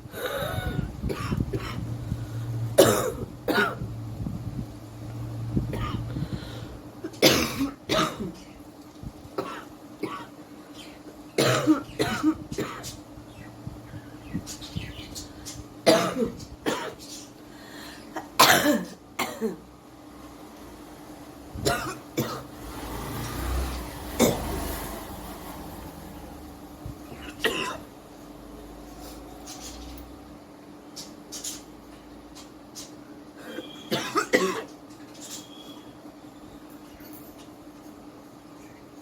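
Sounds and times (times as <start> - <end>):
woman coughing: 0.2 - 1.8, 2.8 - 3.8, 5.7 - 6.1, 7.1 - 8.4, 11.4 - 13.0, 15.9 - 17.0, 18.2 - 19.6, 21.6 - 22.5, 27.2 - 27.9, 33.4 - 34.7.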